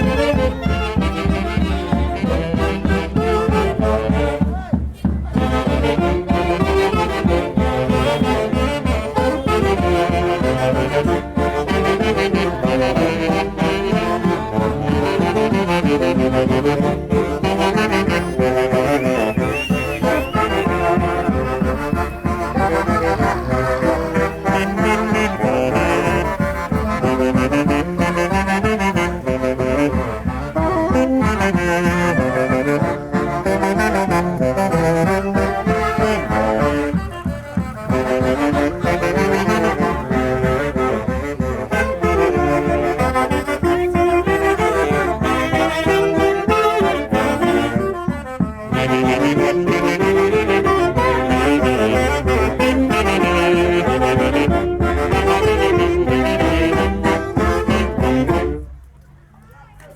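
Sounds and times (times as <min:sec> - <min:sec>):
brass band playing festival music: 0:00.0 - 0:59.0
wavering high note: 0:31.8 - 0:33.0.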